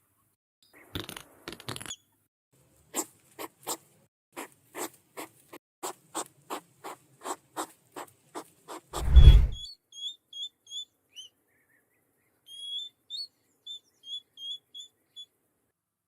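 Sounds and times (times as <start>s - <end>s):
hedgehog snuffling: 3.0s - 8.9s.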